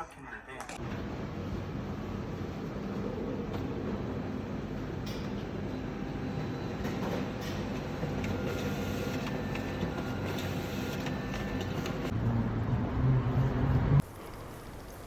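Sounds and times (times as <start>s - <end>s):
vehicle running noise: 9.4s - 14.8s.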